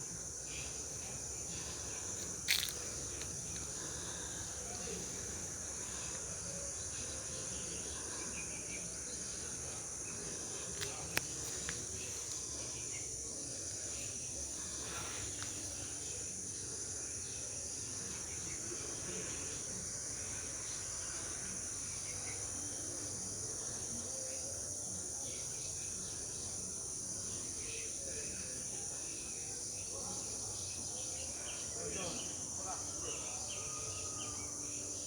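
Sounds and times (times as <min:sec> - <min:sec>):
insects chirping shrilly: 0:00.0 - 0:13.8.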